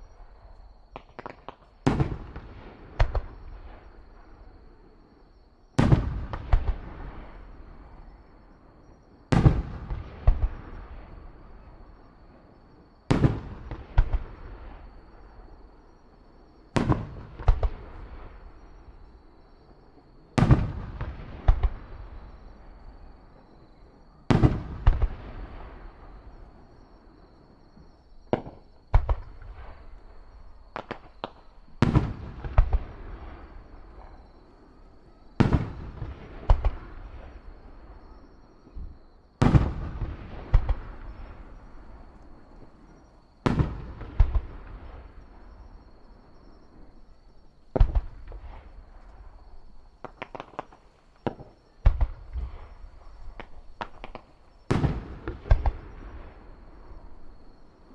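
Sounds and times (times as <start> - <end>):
firework booms: 0.0 - 4.5, 5.8 - 8.2, 9.3 - 12.2, 13.0 - 47.1, 47.7 - 57.9
fireworks crackling: 47.7 - 57.3.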